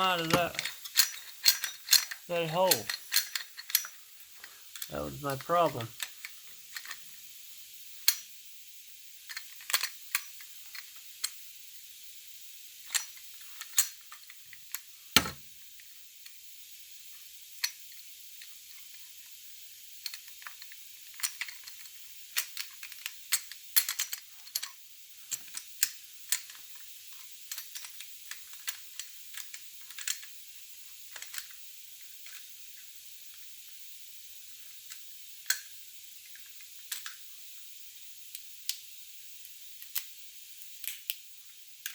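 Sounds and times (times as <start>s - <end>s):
gun parts clicking and knocking: 0.0s - 4.0s, 15.2s - 15.5s.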